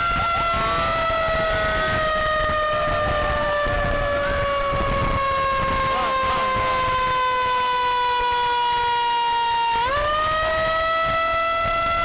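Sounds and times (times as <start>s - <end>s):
wind rumble on microphone: 0.0s - 7.2s
emergency vehicle siren: 0.0s - 12.0s
fainter rising and falling siren: 0.0s - 12.0s.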